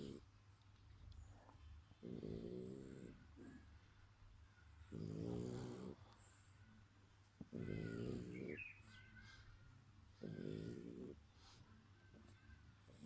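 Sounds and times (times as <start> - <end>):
dog snoring: 0.0 - 0.2, 2.0 - 3.6, 4.9 - 6.4, 7.4 - 8.6, 10.2 - 11.2.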